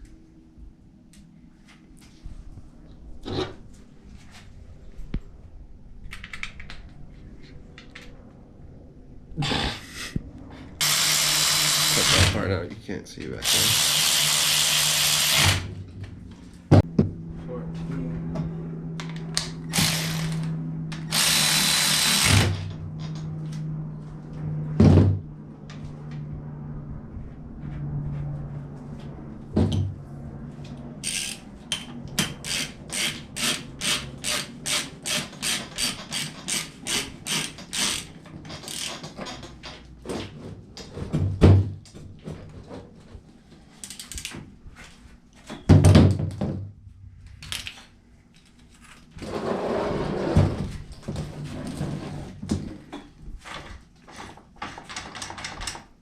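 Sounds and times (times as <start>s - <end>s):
steady low hum: 0.0s - 34.9s
ratchet wrench clicking: 31.0s - 39.0s.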